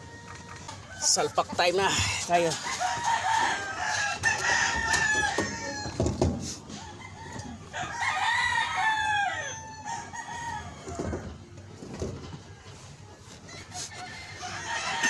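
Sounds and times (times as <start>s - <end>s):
rooster crowing: 2.5s - 11.4s, 13.5s - 15.0s.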